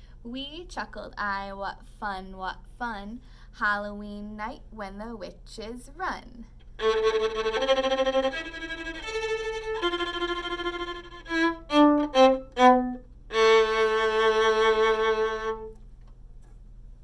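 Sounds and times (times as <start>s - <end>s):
violin playing: 6.8s - 15.8s.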